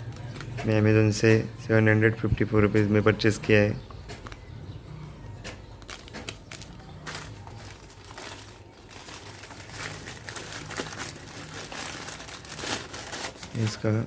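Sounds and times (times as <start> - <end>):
packaging crinkling: 5.6 - 14.0.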